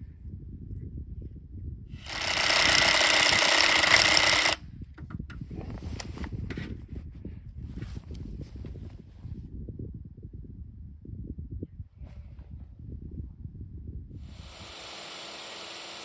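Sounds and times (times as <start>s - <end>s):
power tool running loudly: 2.0s - 4.6s, 14.2s - 16.0s.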